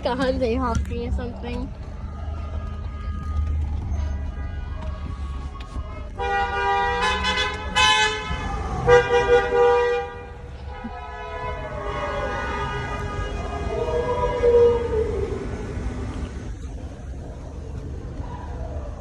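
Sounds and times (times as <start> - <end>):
car horns honking: 2.2 - 14.8.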